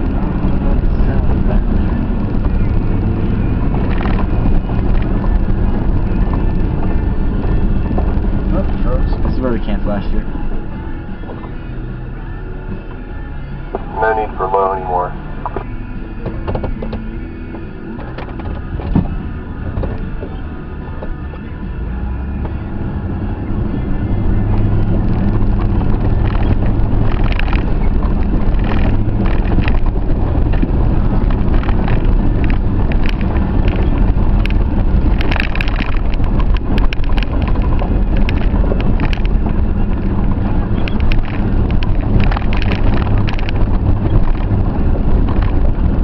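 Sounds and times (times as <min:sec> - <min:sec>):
vehicle engine climbing: 0:00.0 - 0:46.0
tyres and chassis knocking: 0:15.4 - 0:21.5.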